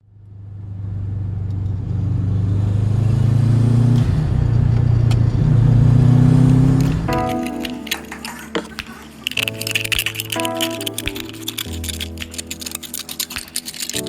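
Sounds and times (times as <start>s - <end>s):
car engine revving: 0.5s - 7.2s.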